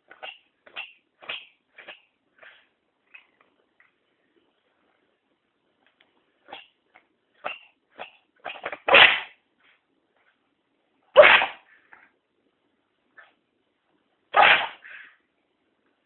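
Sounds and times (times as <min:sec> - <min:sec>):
cat sneezing: 0:00.1 - 0:02.6, 0:06.4 - 0:06.7, 0:07.4 - 0:09.4, 0:11.1 - 0:11.7, 0:14.3 - 0:15.1.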